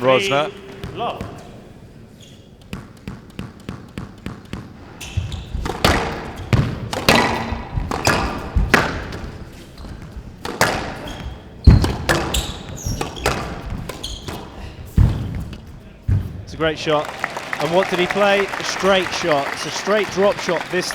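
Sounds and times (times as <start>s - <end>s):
squash ball hitting rackets and walls: 0.7s - 16.5s.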